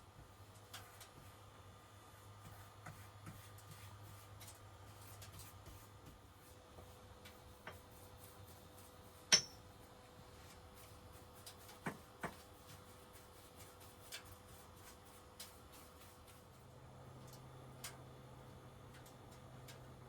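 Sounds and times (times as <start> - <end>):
faint steady hum: 0.0 - 20.0
sharp ringing clink: 9.3 - 9.6
taps and knocks of objects: 11.7 - 12.5.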